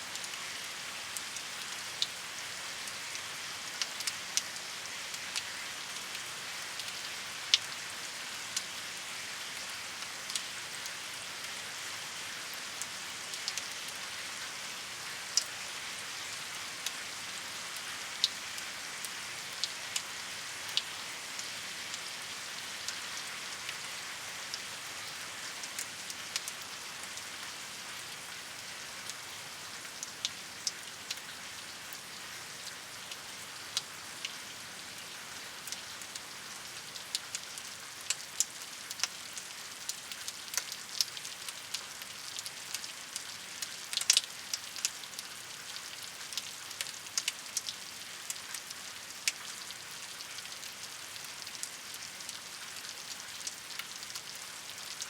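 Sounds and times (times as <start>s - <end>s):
steady rain hiss: 0.0s - 55.0s
water drips ticking: 43.6s - 45.2s, 46.3s - 49.7s.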